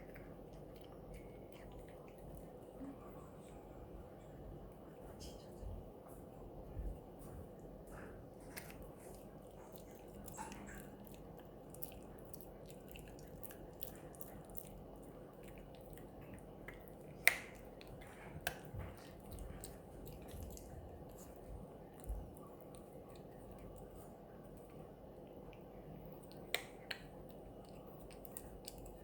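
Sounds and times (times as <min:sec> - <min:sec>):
dog gnawing on chew stick: 0:00.0 - 0:02.9, 0:07.8 - 0:29.0
sharp cracks of chew stick: 0:16.7 - 0:18.7.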